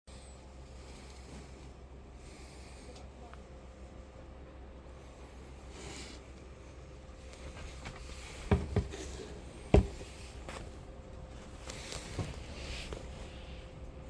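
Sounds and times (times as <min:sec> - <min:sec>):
low steady hum: 0:00.1 - 0:14.0
sharp knocks: 0:09.7 - 0:10.1.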